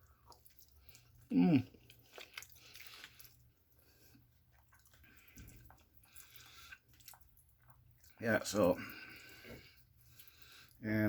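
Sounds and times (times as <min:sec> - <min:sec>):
chewing with wet mouth clicks: 0:00.0 - 0:10.8
person humming mm: 0:01.3 - 0:01.7.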